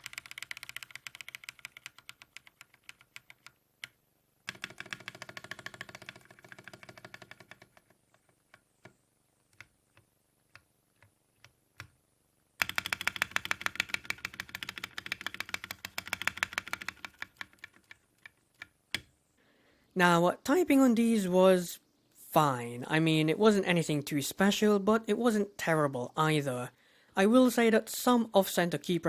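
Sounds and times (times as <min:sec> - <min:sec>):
mechanical keyboard typing: 0:00.0 - 0:12.0, 0:12.6 - 0:19.1.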